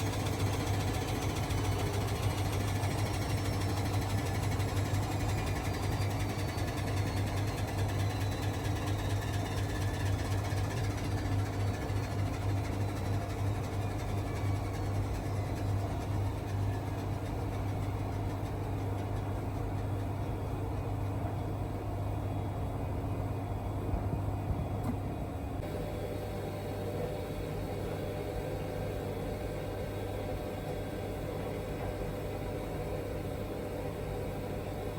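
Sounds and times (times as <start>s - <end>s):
washing machine spinning: 0.0s - 34.9s.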